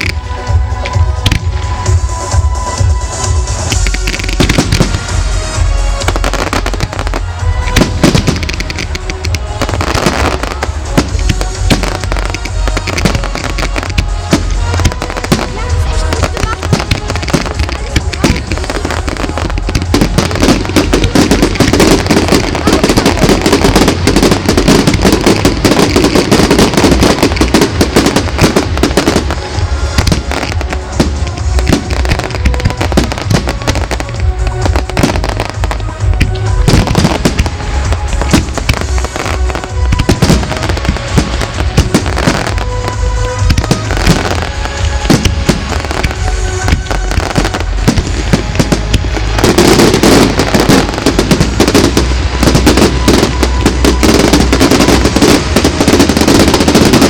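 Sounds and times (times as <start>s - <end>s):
fireworks bangs and crackling: 0.0s - 57.0s
music playing: 0.0s - 57.0s.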